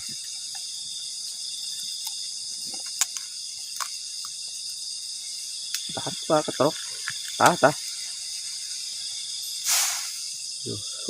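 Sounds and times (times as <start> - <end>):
insects chirping: 0.0 - 11.0.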